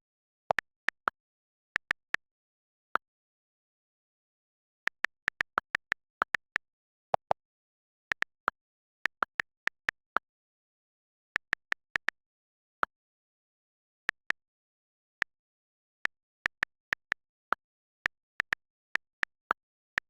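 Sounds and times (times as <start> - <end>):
sharp clicks: 1.8 - 2.3, 4.8 - 7.4, 8.1 - 10.0, 11.4 - 12.2, 14.1 - 20.0.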